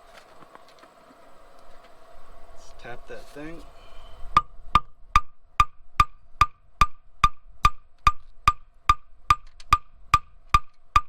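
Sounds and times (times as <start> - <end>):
hammer tapping on metal: 4.4 - 11.0.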